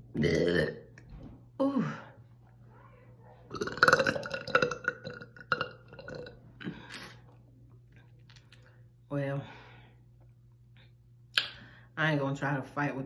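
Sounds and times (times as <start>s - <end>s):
person burping: 0.1s - 1.0s, 3.5s - 7.1s.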